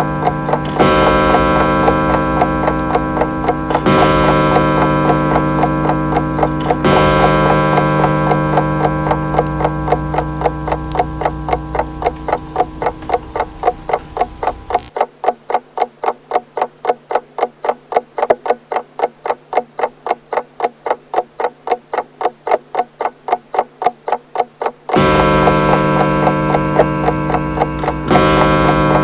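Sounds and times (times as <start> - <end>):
clock gong ringing: 0.0 - 14.9, 25.0 - 29.0
pendulum clock ticking: 0.0 - 29.0.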